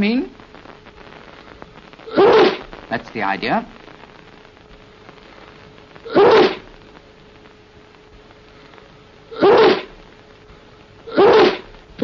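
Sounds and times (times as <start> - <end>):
faint steady hum: 0.0 - 12.0
person sneezing: 2.1 - 2.6, 6.1 - 6.6, 9.3 - 10.0, 11.1 - 11.7.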